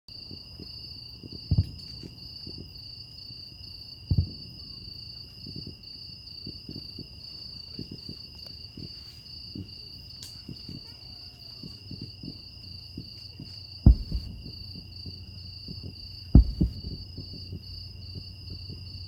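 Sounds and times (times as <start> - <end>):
insect chorus trilling: 0.2 - 19.0
low thumps: 13.8 - 19.0.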